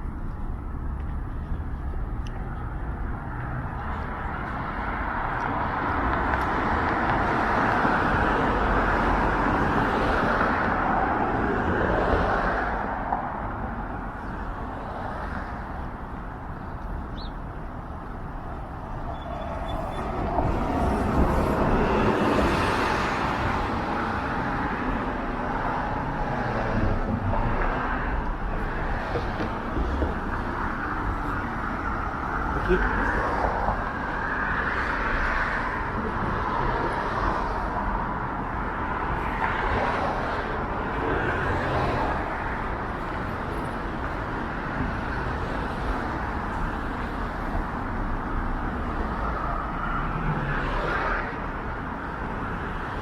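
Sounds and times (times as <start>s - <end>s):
cars passing: 0.0s - 53.0s.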